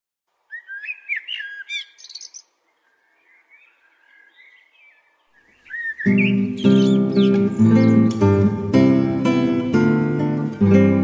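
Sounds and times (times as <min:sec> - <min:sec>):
songbirds chirping and warbling: 0:00.3 - 0:08.6.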